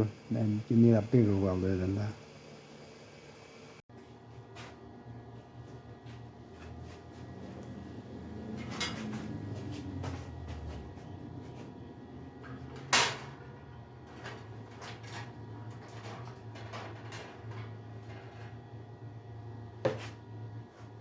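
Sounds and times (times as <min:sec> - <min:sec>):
steady low hum: 0:00.0 - 0:03.8.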